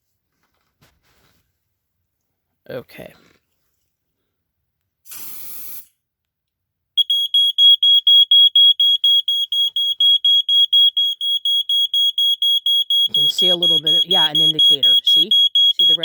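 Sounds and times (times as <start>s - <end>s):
aerosol spray hiss: 5.1s - 5.9s
smoke alarm beeping: 7.0s - 16.0s.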